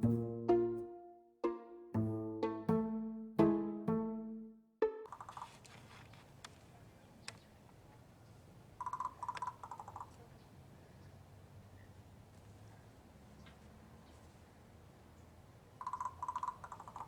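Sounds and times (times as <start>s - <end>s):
plucked music note: 0.0s - 5.1s
crow rattling clicks: 8.8s - 10.2s, 15.8s - 17.0s.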